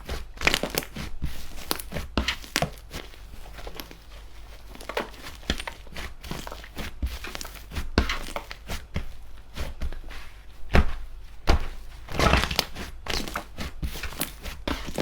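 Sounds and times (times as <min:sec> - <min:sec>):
slime squished crackling and popping: 0:00.4 - 0:01.0, 0:12.1 - 0:15.0.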